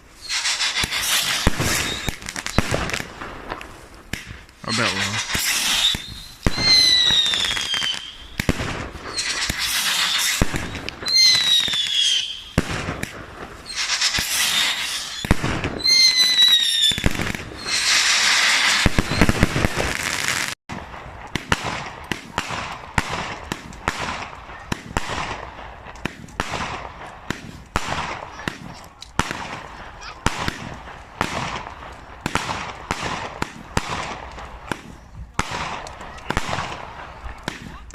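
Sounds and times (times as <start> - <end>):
firework falling whistles: 0.0 - 3.1, 4.8 - 12.7, 13.6 - 20.6
fireworks crackling bursts: 0.0 - 37.9.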